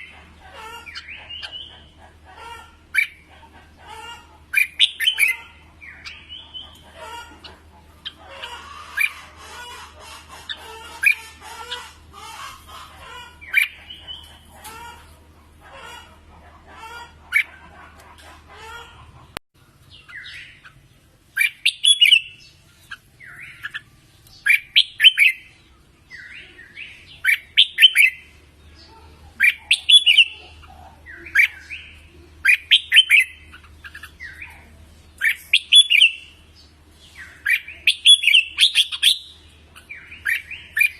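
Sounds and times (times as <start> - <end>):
birds chirping: 0.0 - 40.9
bird repeating loud song phrases: 23.2 - 36.4.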